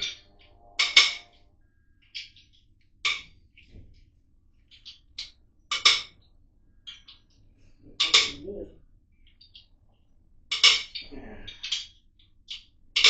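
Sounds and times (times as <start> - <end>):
tools clinking on metal: 0.0 - 1.4.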